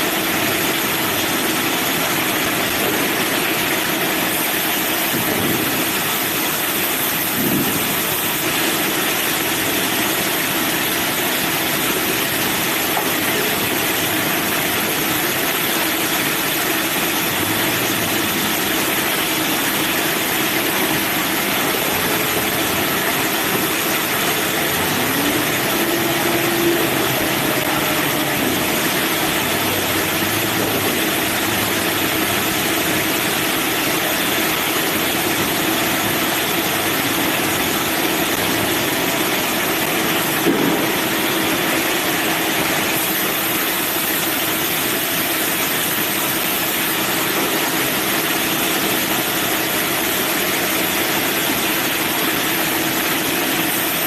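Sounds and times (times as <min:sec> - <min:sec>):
bandsaw mill running: 0:00.0 - 0:54.0
sharp knock: 0:40.4 - 0:41.0.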